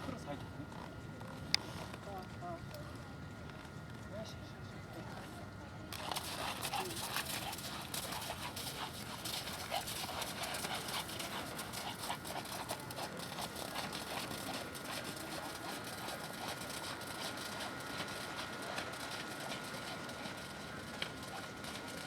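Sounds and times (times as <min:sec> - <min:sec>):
horse hoofbeats: 0:06.0 - 0:22.0.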